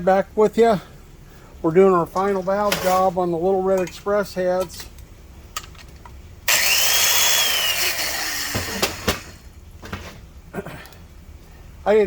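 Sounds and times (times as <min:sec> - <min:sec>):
tool clicks: 0:06.5 - 0:09.3
valve seat grinder whining: 0:06.5 - 0:09.5.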